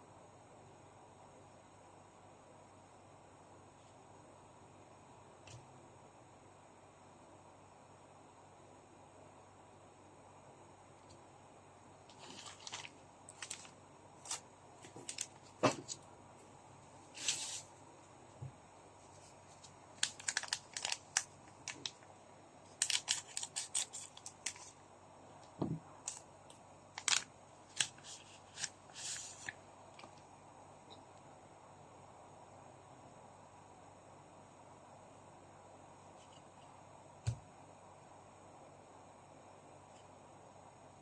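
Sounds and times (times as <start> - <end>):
foil wrappers crinkling: 12.1 - 16.0, 19.6 - 22.0, 22.7 - 24.8, 27.0 - 29.6.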